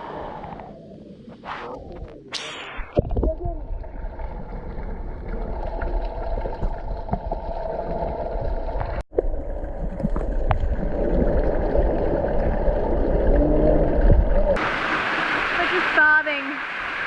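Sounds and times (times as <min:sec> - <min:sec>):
creek water rushing: 0:14.6 - 0:17.0.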